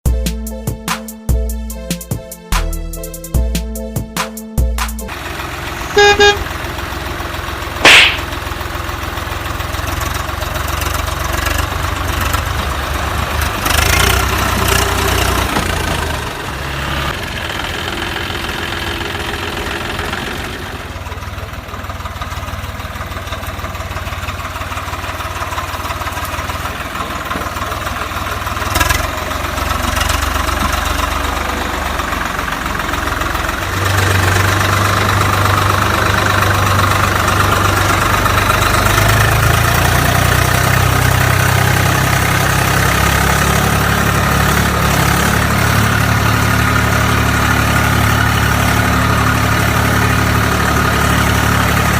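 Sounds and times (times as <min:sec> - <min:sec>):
vehicle engine idling: 0:05.1 - 0:51.9
small knock: 0:07.8 - 0:08.3
loud sharp bang: 0:07.8 - 0:08.4.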